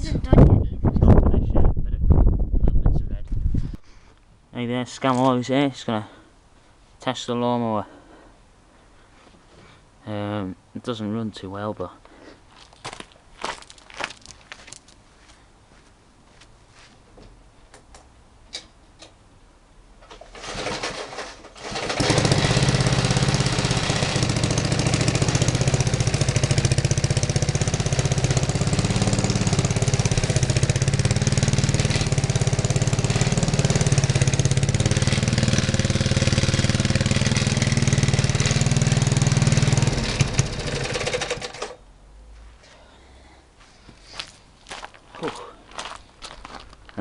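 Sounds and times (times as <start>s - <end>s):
lawnmower engine running: 20.3s - 41.8s.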